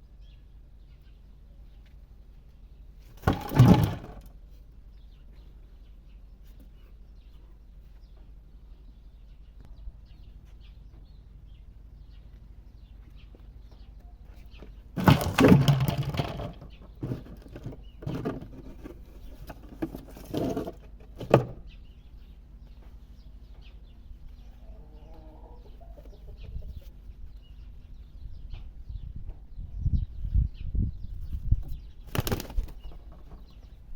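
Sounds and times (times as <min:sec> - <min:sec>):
pigeons rustling and scuffling: 0:01.8 - 0:04.8, 0:12.3 - 0:21.8, 0:31.3 - 0:33.8.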